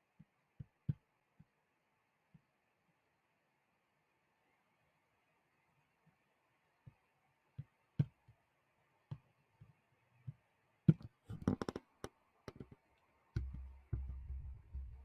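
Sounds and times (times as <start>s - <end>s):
low dull thumps: 13.4s - 15.0s.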